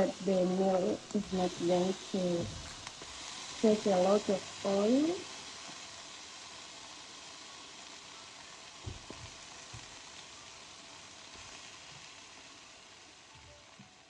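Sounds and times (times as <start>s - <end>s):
chicken sizzling in hot oil: 0.0s - 14.0s
soft knocks: 8.8s - 9.9s.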